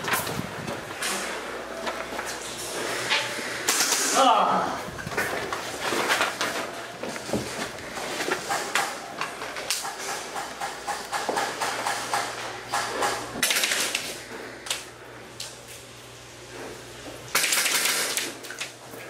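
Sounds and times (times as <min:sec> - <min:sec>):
airsoft guns firing: 0:13.4 - 0:14.1, 0:17.3 - 0:18.4.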